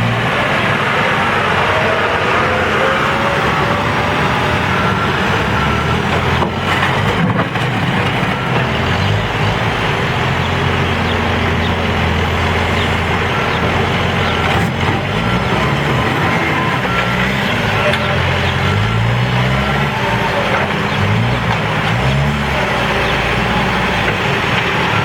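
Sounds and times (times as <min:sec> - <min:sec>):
diesel engine running under load: 0:00.0 - 0:25.0
backup alarm beeping: 0:02.5 - 0:08.7, 0:12.2 - 0:21.0.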